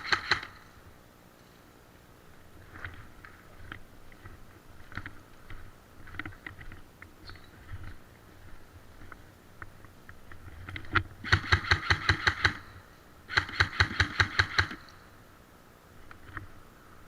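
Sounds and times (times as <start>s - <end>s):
airsoft gun firing: 0.0s - 0.6s, 11.2s - 14.9s.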